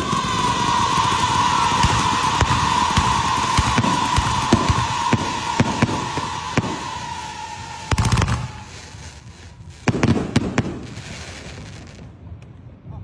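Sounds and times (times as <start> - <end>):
whistle-like tone: 0.0 - 9.0
fireworks hissing: 0.0 - 12.1
fireworks cracking bangs: 0.0 - 12.4.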